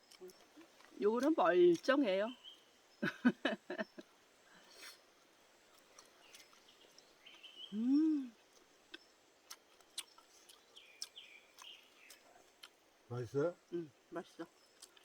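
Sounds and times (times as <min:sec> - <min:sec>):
person humming while eating: 0:07.7 - 0:08.4.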